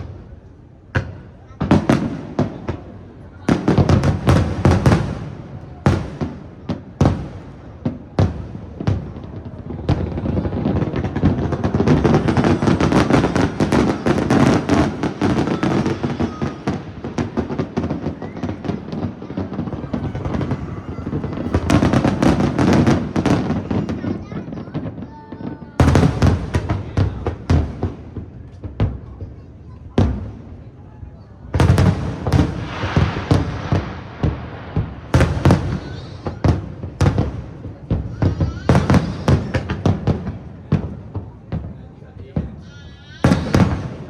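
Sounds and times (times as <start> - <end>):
fireworks bangs and crackling: 0.0 - 44.0.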